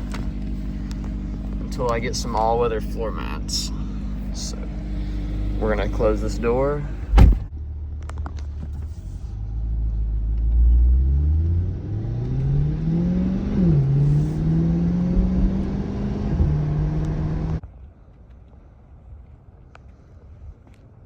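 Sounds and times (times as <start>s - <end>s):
car engine accelerating: 0.0s - 17.6s.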